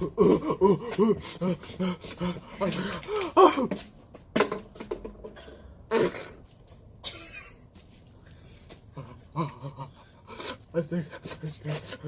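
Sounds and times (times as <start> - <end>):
man's wavering cry: 0.0 - 3.7.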